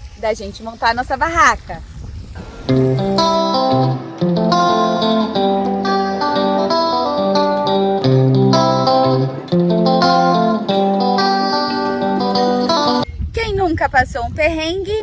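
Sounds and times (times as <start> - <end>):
guitar background music: 2.4 - 13.1.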